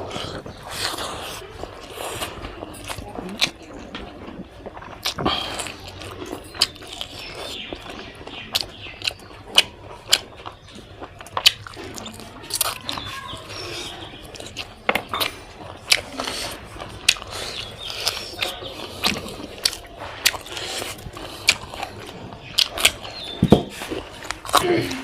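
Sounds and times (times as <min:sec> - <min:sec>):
person chewing: 0:00.0 - 0:25.0
wet mouth clicks and smacks: 0:14.4 - 0:23.2.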